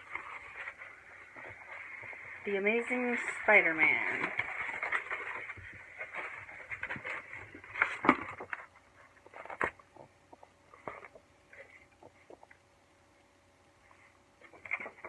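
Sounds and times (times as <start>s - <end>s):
packaging crinkling and rustling: 3.0s - 10.1s.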